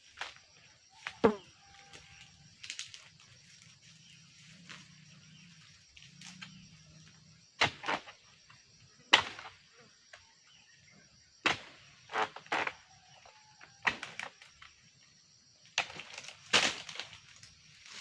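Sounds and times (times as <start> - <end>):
high insect buzz: 0.1 - 9.0.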